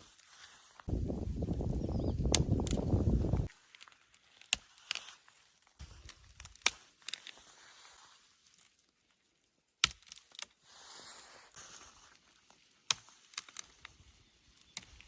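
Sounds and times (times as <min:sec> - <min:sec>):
twigs snapping: 0:00.8 - 0:07.6, 0:08.4 - 0:09.0, 0:09.8 - 0:10.6, 0:11.8 - 0:15.0.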